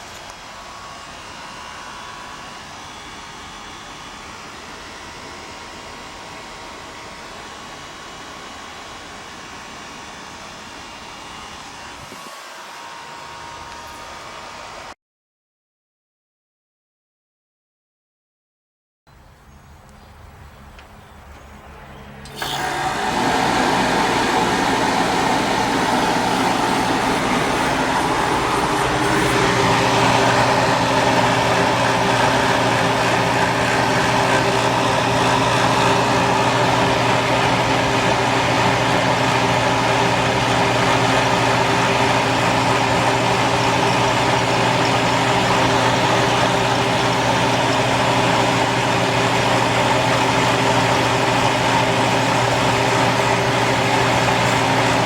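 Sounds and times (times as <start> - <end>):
fan air rushing: 20.6 - 55.0
dehumidifier humming: 21.2 - 55.0.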